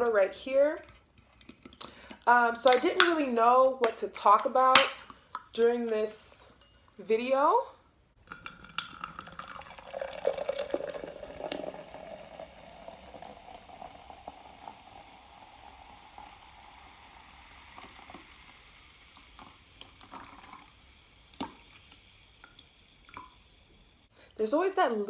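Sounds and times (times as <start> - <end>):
soda pouring and fizzing: 8.2 - 24.2.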